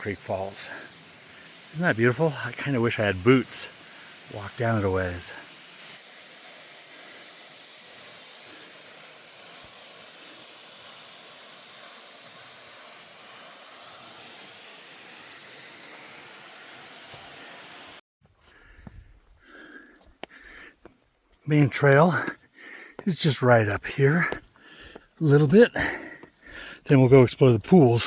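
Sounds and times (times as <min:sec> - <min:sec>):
water running over rock: 0:00.0 - 0:18.0.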